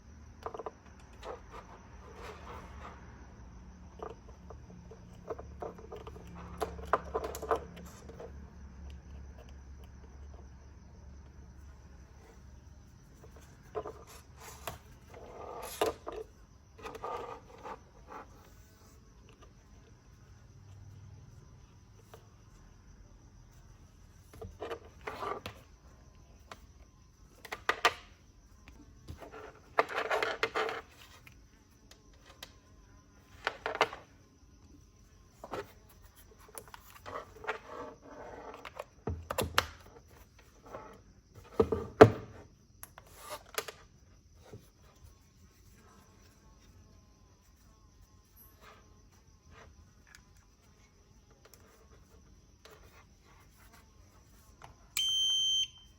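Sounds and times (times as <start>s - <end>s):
faint steady high whine: 0.0s - 55.9s.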